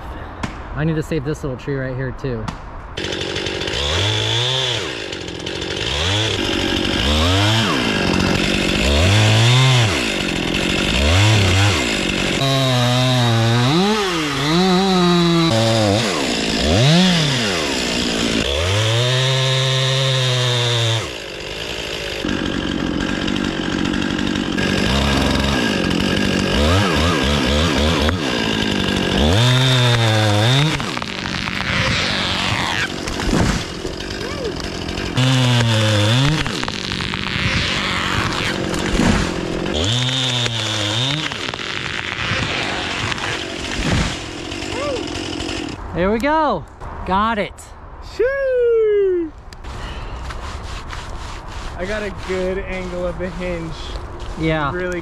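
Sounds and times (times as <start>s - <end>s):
chainsaw revving: 3.0s - 45.8s.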